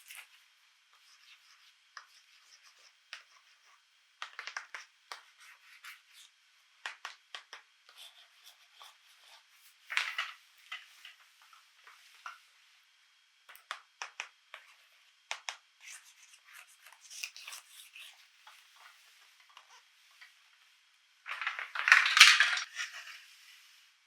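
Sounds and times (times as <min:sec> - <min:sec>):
plastic toy pieces clicking: 0:21.3 - 0:22.7.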